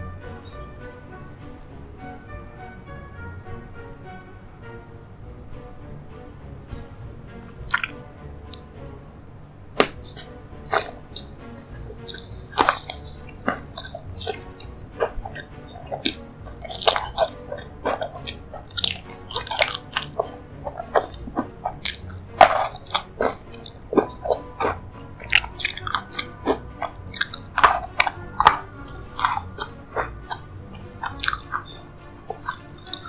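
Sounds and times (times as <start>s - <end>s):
soft background music: 0.0s - 33.0s
mouth clicks: 7.3s - 8.7s, 9.8s - 33.0s
biting and chewing: 7.4s - 8.7s, 9.8s - 33.0s
sharp crunches: 12.0s - 30.4s.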